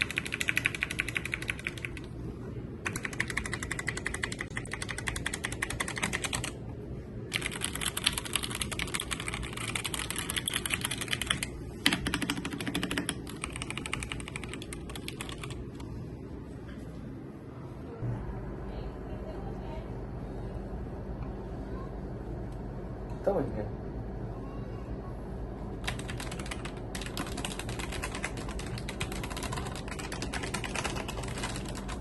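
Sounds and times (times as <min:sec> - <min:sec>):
mechanical keyboard typing: 0:00.0 - 0:02.1, 0:02.8 - 0:06.6, 0:07.3 - 0:15.6, 0:25.8 - 0:32.0.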